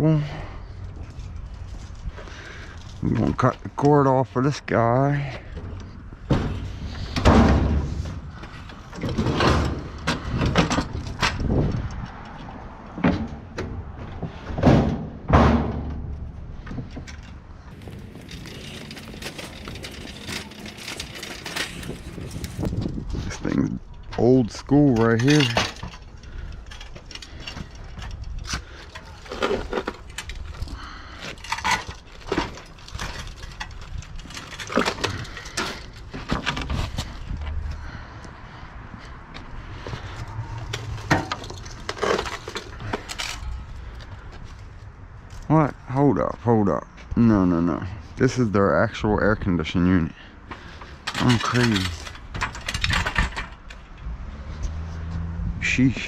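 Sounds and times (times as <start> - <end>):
loud thuds: 13.0 - 17.1
metal knocks and clinks: 16.9 - 22.8.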